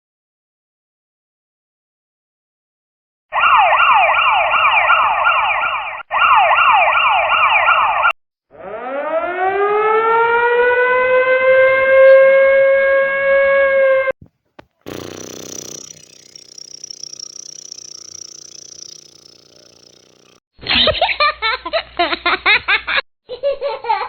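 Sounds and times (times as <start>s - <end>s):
siren wailing: 3.3s - 14.1s
siren yelping: 3.3s - 14.1s.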